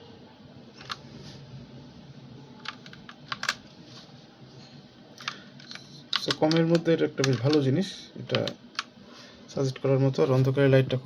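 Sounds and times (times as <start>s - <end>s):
keyboard keys clicking: 2.6s - 3.6s, 5.2s - 7.6s.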